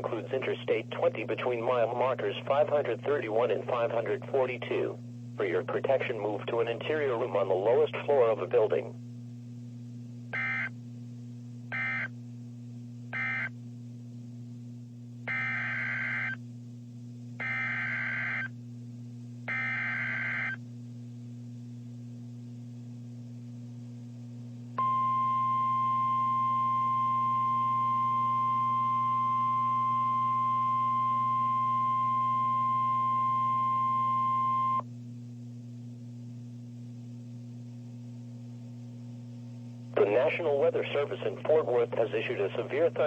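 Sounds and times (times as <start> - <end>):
low electrical hum: 0.0 - 43.0
steady warning alarm tone: 10.4 - 10.7, 11.7 - 12.1, 13.2 - 13.5, 15.3 - 16.4, 17.4 - 18.5, 19.5 - 20.6, 24.8 - 34.8
screeching digital data bursts: 15.3 - 16.4, 17.4 - 18.5, 19.5 - 20.6.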